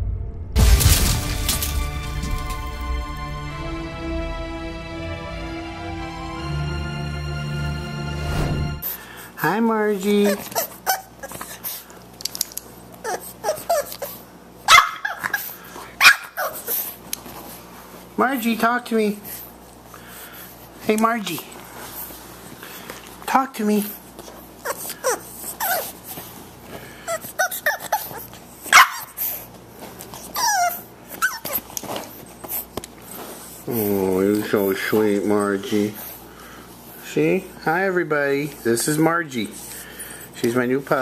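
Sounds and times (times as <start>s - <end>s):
puppy crying: 10.2s - 11.7s, 13.0s - 16.9s, 24.6s - 26.1s, 27.0s - 29.2s, 30.2s - 31.8s
puppy yipping: 13.0s - 16.7s, 24.6s - 26.0s, 27.1s - 29.2s, 30.2s - 31.8s
puppy barking: 14.7s - 15.4s, 16.0s - 16.7s, 27.1s - 29.2s.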